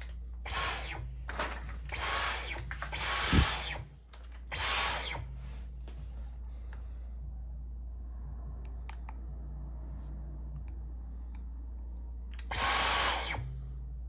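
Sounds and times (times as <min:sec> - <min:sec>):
vacuum motor bursts: 0:00.0 - 0:03.9, 0:04.5 - 0:05.4, 0:12.5 - 0:13.6.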